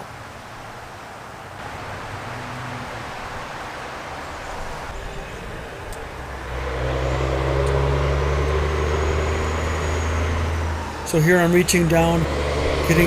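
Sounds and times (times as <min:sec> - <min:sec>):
faint outdoor hiss: 0:00.0 - 0:09.0
low engine hum: 0:01.6 - 0:13.0.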